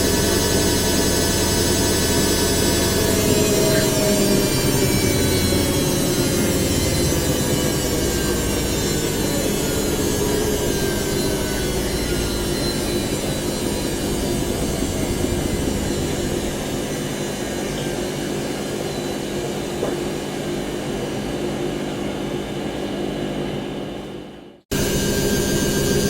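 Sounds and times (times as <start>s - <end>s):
washing machine spinning: 0.0s - 23.8s, 24.7s - 26.0s.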